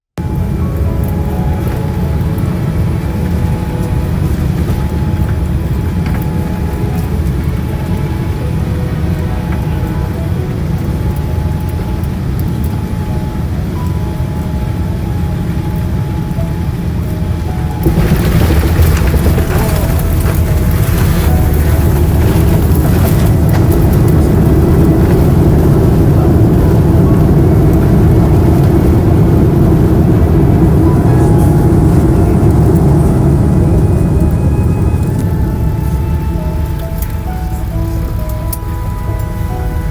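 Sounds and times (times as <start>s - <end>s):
airliner cabin rumble: 0.1s - 39.9s
faint rattles: 17.5s - 28.6s.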